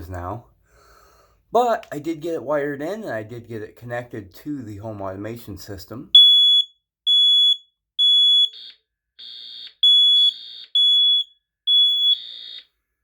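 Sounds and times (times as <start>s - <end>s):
smoke detector high-pitched beeps: 6.2s - 8.8s, 9.6s - 12.6s
fainter rougher alarm beeps: 6.2s - 12.6s.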